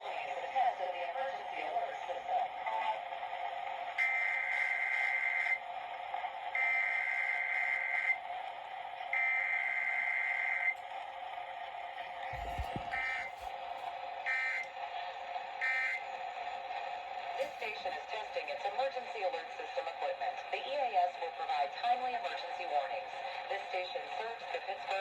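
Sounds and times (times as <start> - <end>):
radio background noise: 0.0 - 3.1, 11.9 - 13.6, 17.4 - 25.0.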